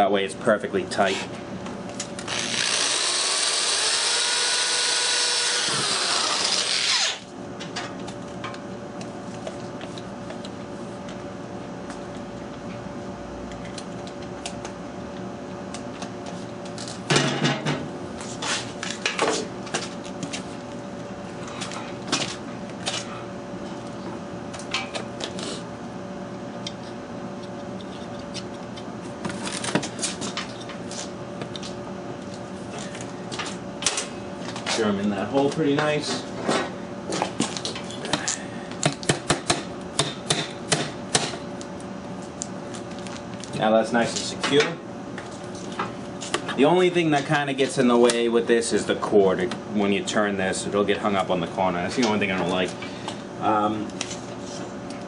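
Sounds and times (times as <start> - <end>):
electric drill drilling acrylic: 2.3 - 7.2.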